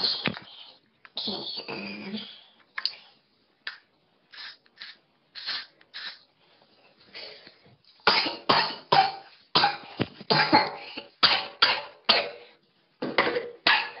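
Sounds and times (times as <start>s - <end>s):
person coughing hard: 8.1s - 12.4s.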